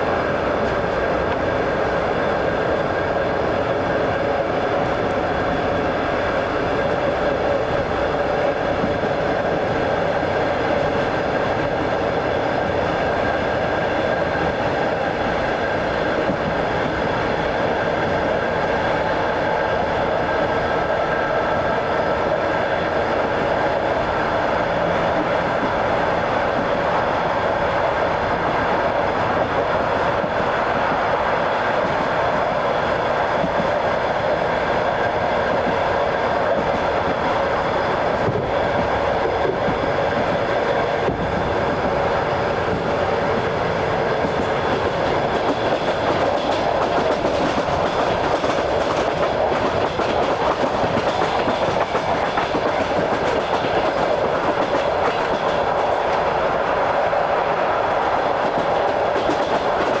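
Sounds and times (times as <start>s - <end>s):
train wheels rumbling on rails: 0.0s - 60.0s
wheels clacking over rail joints: 35.4s - 56.9s.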